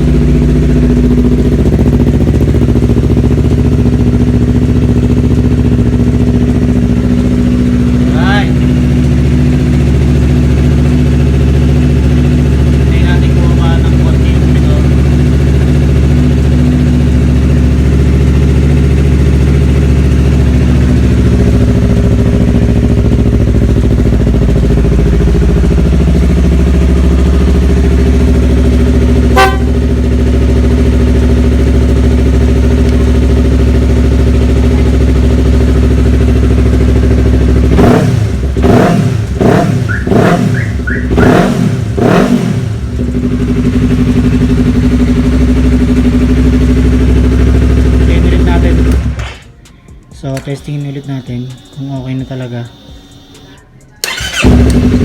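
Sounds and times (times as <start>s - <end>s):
motorcycle engine idling and revving: 0.0s - 55.0s.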